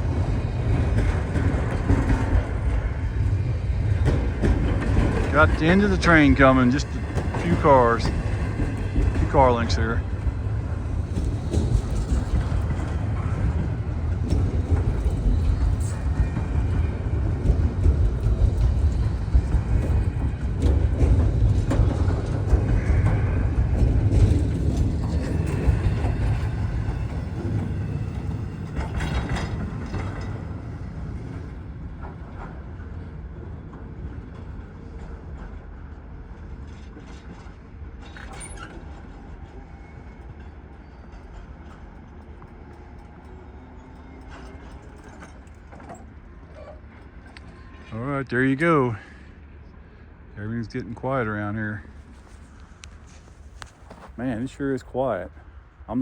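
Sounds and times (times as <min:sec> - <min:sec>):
freight train wheels rumbling: 0:00.0 - 0:56.0
train clanking: 0:00.0 - 0:56.0.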